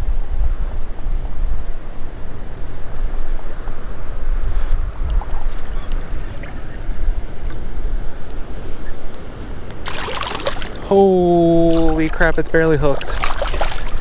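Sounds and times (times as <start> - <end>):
wind buffeting microphone: 0.0 - 14.0
rushing river water: 9.4 - 14.0
fish splashing: 9.9 - 14.0.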